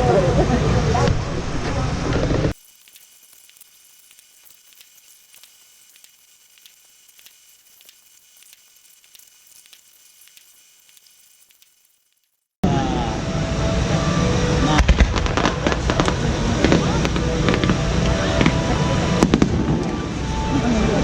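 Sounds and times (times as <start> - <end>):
faint crackling hiss with ticks: 2.5 - 12.5
fireworks bangs: 14.8 - 19.8.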